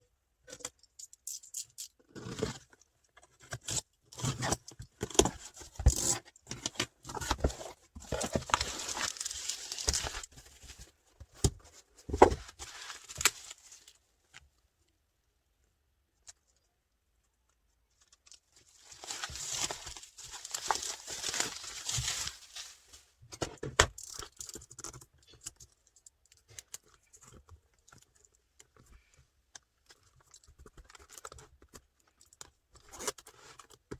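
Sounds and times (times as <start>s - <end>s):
packaging rustling and tearing: 5.4s - 10.9s, 12.2s - 14.0s, 18.6s - 23.0s.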